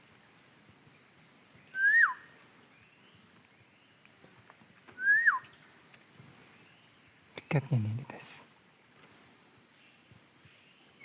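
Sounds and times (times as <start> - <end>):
high insect drone: 0.0 - 11.0
whistled bird call: 1.7 - 2.4, 5.0 - 5.6.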